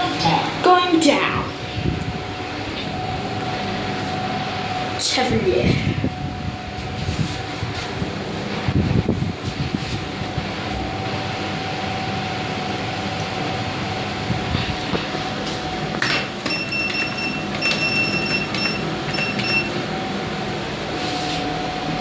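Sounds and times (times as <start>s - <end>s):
lift running hum with whine: 0.0s - 22.0s
high electronic beeping: 16.4s - 19.8s.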